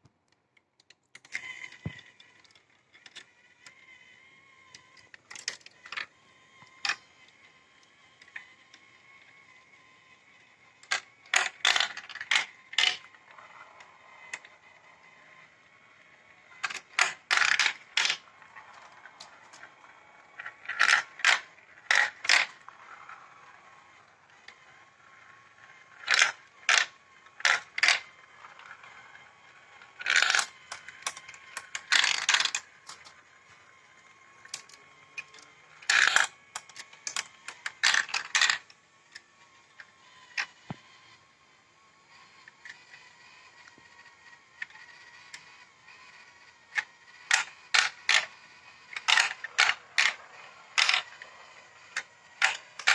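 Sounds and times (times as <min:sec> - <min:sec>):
glass marbles clacking on plastic track: 0:10.8 - 0:13.1, 0:16.6 - 0:18.2, 0:20.4 - 0:22.6, 0:26.0 - 0:28.1, 0:29.9 - 0:33.2, 0:34.4 - 0:38.7, 0:46.8 - 0:51.3, 0:51.9 - 0:52.9.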